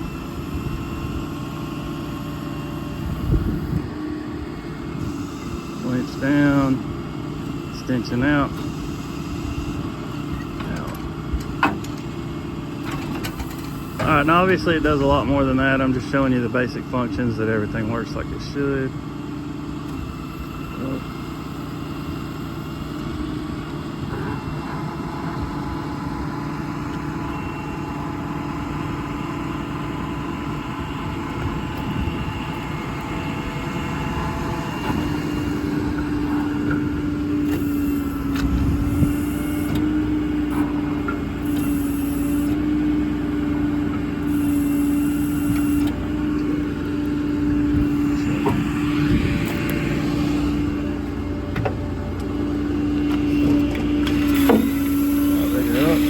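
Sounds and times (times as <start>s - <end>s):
diesel engine running: 0.0s - 56.0s
steady hum: 13.5s - 56.0s.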